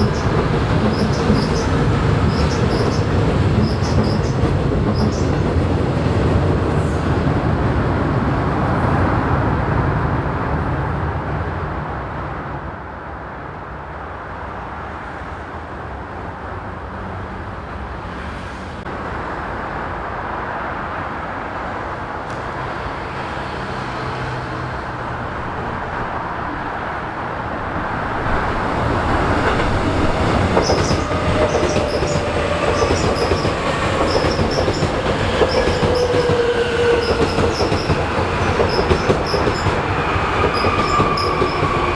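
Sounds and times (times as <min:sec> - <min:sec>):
train wheel and brake squeal: 0:00.0 - 0:05.4, 0:28.4 - 0:41.9
electric train rumbling on rails: 0:00.0 - 0:41.9.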